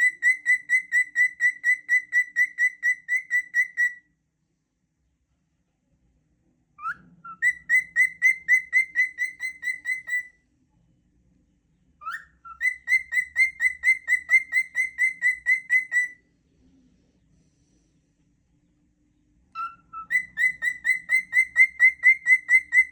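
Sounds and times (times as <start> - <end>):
cockatiel whistling: 0.0 - 4.0, 6.8 - 10.4, 12.0 - 16.2, 19.5 - 22.9.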